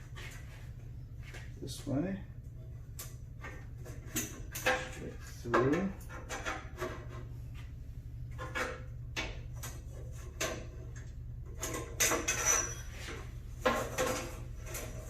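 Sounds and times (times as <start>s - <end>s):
steady low hum: 0.0s - 15.0s
bandsaw blade scraping and rattling: 11.5s - 15.0s.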